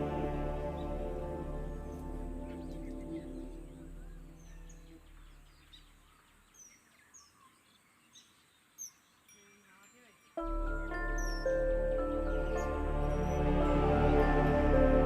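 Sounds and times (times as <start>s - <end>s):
soft background music: 0.0s - 6.1s, 9.2s - 15.0s
bird chirping: 0.0s - 15.0s.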